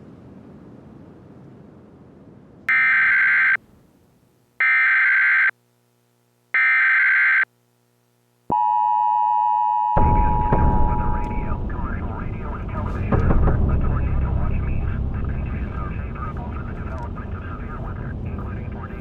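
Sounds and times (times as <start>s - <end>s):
two-pitch attention tone: 8.5s - 11.7s.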